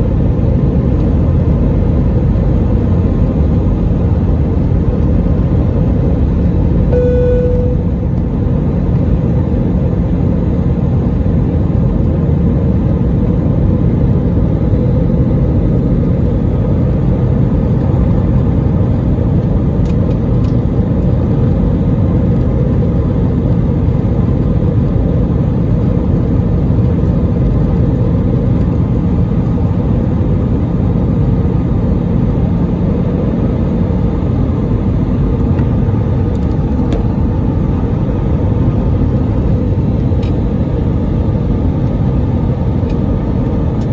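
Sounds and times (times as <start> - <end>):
airliner rumble: 0.0 - 43.9
short single tone: 6.9 - 8.4.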